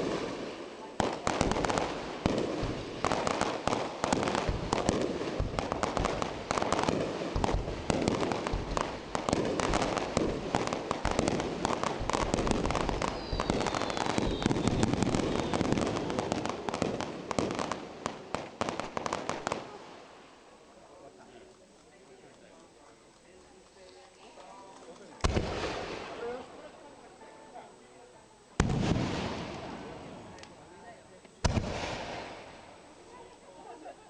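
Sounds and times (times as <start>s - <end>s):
fireworks booming and crackling: 0.0s - 20.3s, 25.2s - 26.6s, 28.6s - 30.6s, 31.4s - 32.9s.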